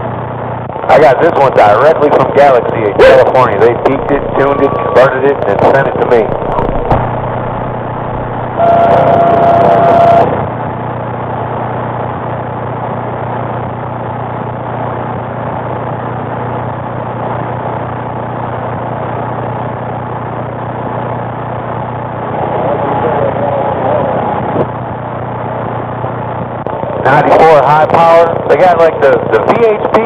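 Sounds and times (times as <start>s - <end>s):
low hum: 0.0s - 16.4s
radio static hiss: 0.0s - 30.0s
radio transmission tone: 0.9s - 10.6s.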